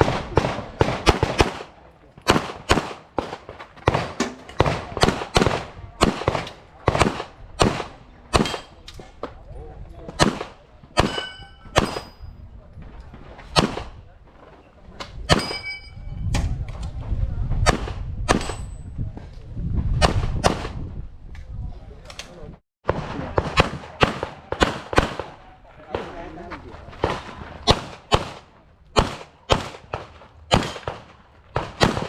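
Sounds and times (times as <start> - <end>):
pistol shots: 0.0 - 8.8, 10.2 - 12.1, 13.5 - 14.0, 22.9 - 26.1, 27.0 - 32.0
steel targets clanging: 11.0 - 12.3, 15.4 - 16.1.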